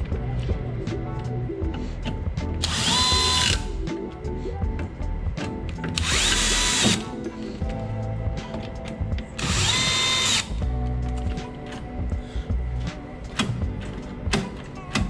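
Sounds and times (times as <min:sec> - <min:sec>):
background music: 0:00.0 - 0:15.0
cordless drill motor whine: 0:02.6 - 0:03.7, 0:06.0 - 0:07.1, 0:09.4 - 0:10.6.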